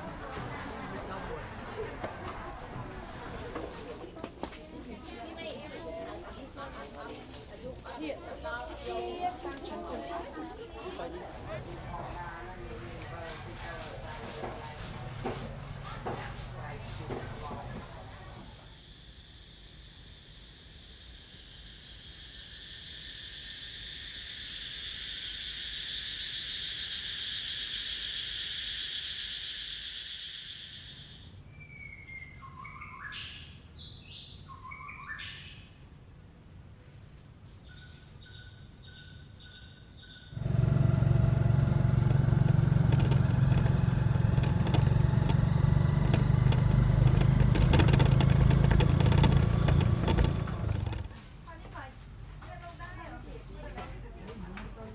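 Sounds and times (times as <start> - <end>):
auto rickshaw engine running: 0.0 - 3.8, 11.0 - 18.6, 40.4 - 51.2
faint insects: 0.0 - 54.9
cicadas chattering: 15.2 - 33.2, 37.6 - 51.2
birds whistling and chirping: 31.6 - 35.7.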